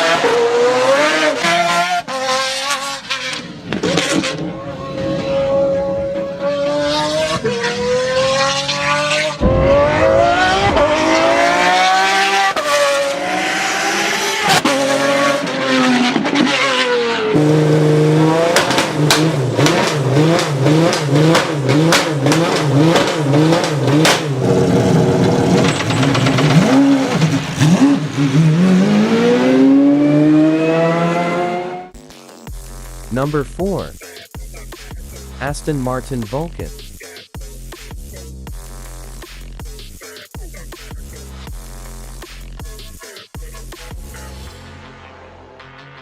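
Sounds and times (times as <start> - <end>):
sports car engine revving: 0.0 - 31.9
exhaust pops and bangs: 9.4 - 12.8, 18.5 - 28.0.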